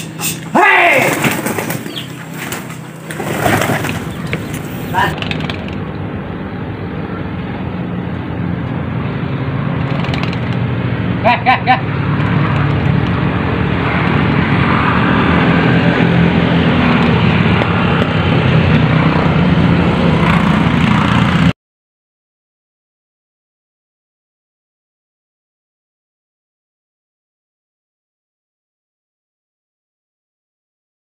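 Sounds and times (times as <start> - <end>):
short high-pitched notes: 0.0 - 0.5
vehicle engine running: 0.0 - 21.5.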